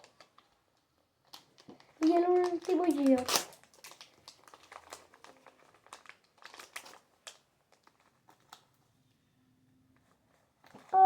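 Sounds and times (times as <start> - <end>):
wrapper crinkling: 0.0 - 8.8.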